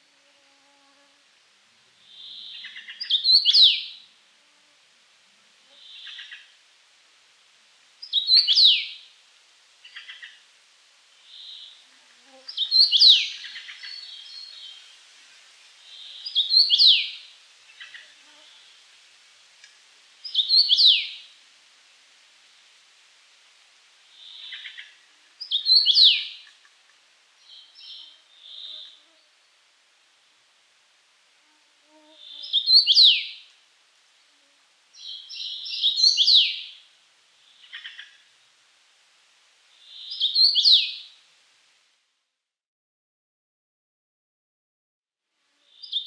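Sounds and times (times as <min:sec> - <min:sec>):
bird whistled song: 0:32.4 - 0:33.3, 0:35.0 - 0:36.7, 0:39.9 - 0:41.0.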